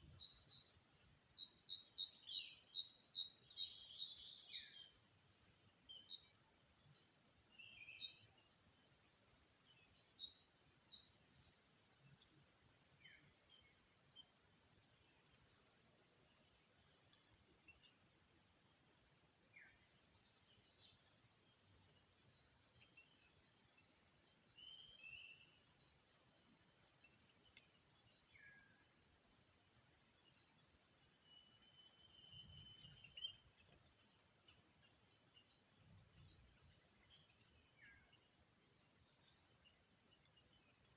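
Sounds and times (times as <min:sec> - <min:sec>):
high-pitched insect chorus: 0:00.0 - 0:40.9
faint chirps: 0:07.5 - 0:11.2, 0:17.1 - 0:18.4, 0:24.3 - 0:25.7, 0:31.2 - 0:38.3, 0:39.2 - 0:40.8.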